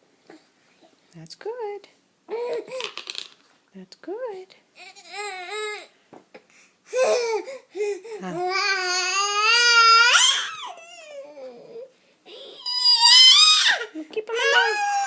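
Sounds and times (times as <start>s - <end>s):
baby babbling and wailing: 4.8s - 5.9s, 6.9s - 15.0s.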